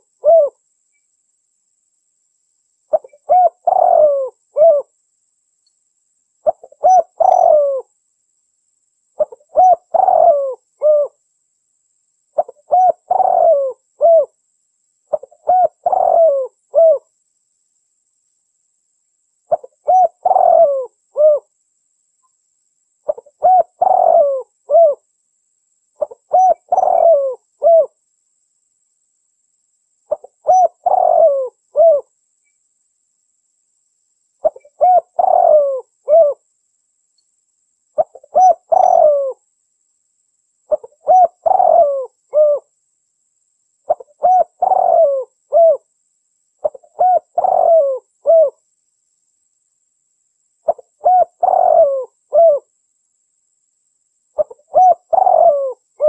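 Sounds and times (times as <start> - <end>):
dove cooing: 0.0 - 0.6, 2.9 - 4.9, 6.4 - 7.9, 9.2 - 11.2, 12.4 - 14.4, 15.1 - 17.1, 19.5 - 21.5, 23.1 - 25.0, 26.0 - 28.0, 30.1 - 32.1, 34.4 - 36.4, 38.0 - 39.4, 40.7 - 42.7, 43.9 - 45.9, 46.6 - 48.6, 50.7 - 52.7, 54.4 - 56.0.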